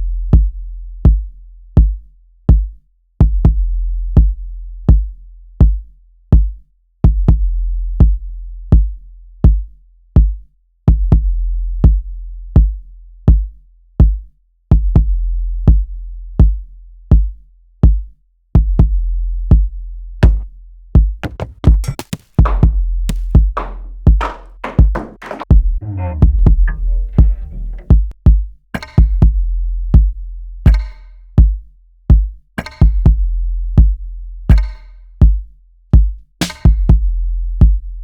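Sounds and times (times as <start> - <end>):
electronic kick drum: 18.6 - 29.4, 30.0 - 35.4, 36.0 - 37.9
higher-pitched drum hits: 20.2 - 20.4, 21.2 - 28.1.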